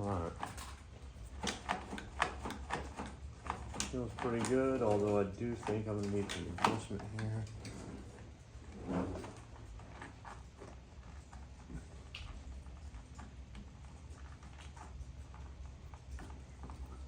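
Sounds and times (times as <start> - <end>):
clicks and taps of hands working: 0.4 - 7.8.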